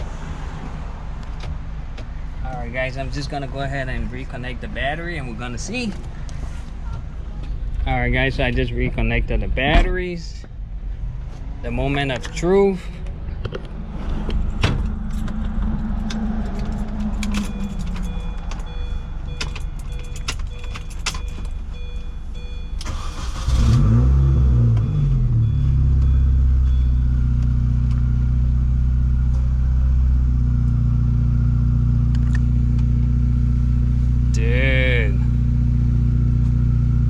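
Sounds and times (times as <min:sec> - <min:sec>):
car engine revving and idling: 0:00.0 - 0:20.0, 0:22.8 - 0:37.0
ignition clicks and faint tones: 0:14.3 - 0:23.5, 0:24.6 - 0:28.1.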